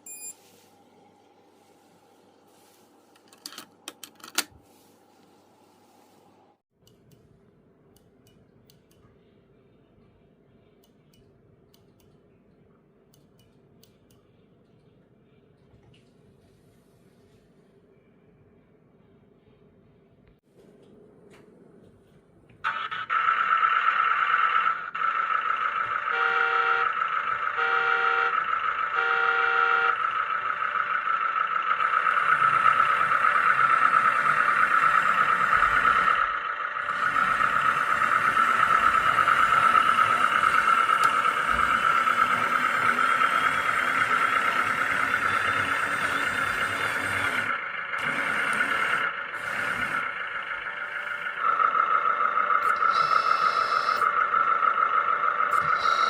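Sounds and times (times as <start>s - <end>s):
hydraulic pump whining: 22.6s - 56.0s
electronic beeps: 52.6s - 54.2s, 55.5s - 56.0s.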